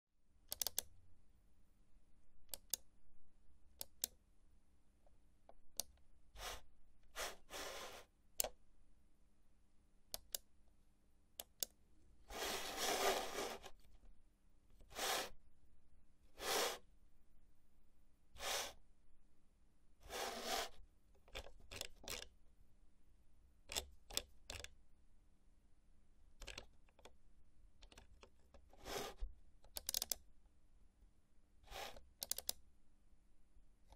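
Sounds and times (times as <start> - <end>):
computer mouse clicking: 0.5 - 0.9, 2.5 - 2.8, 3.8 - 4.2, 5.5 - 6.6, 8.4 - 8.6, 10.1 - 10.5, 11.4 - 11.8, 21.3 - 22.3, 23.7 - 24.8, 26.4 - 27.2, 27.8 - 30.3, 31.7 - 32.6
mouse scraping across desk: 6.4 - 8.1, 12.3 - 13.8, 14.8 - 15.4, 16.3 - 16.9, 18.4 - 18.8, 20.0 - 20.8, 28.7 - 29.3, 31.7 - 32.1.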